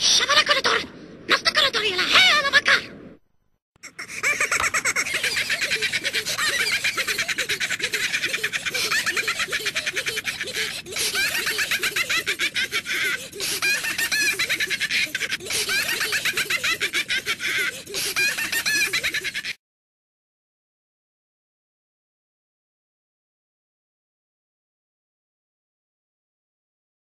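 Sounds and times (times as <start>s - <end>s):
high-pitched giggling: 3.8s - 19.6s.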